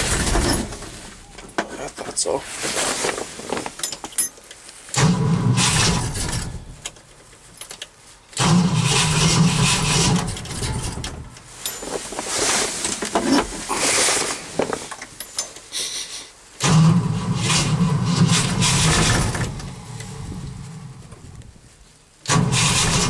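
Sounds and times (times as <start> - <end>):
engine cranking on starter: 0.0 - 0.8, 4.9 - 6.9, 8.4 - 11.3, 16.6 - 21.0, 22.3 - 23.0.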